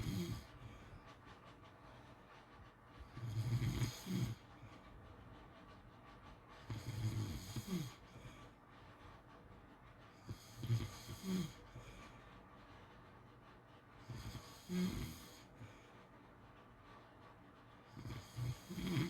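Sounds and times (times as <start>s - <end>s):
dog snoring: 0.0s - 0.8s, 3.1s - 4.5s, 6.7s - 8.4s, 10.2s - 12.0s, 14.0s - 15.8s, 17.9s - 19.0s.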